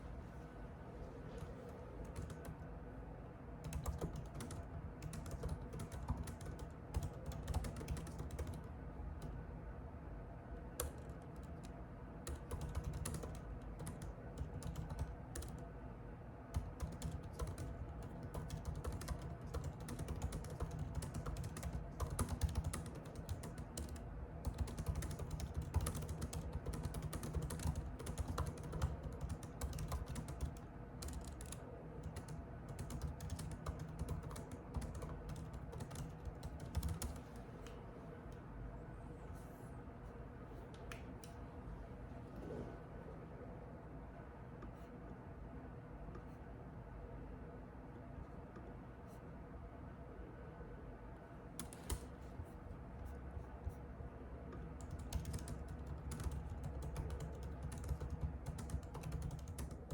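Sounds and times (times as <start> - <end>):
typing on computer keyboard: 2.0 - 2.7, 3.6 - 9.4, 10.7 - 15.7, 16.5 - 37.7, 51.6 - 52.2, 54.5 - 59.9.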